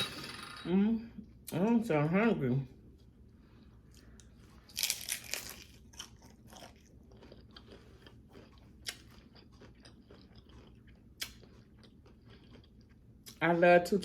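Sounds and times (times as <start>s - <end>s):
chewing with crunches: 3.9s - 14.0s
crunchy bite into taco shell: 4.7s - 13.0s.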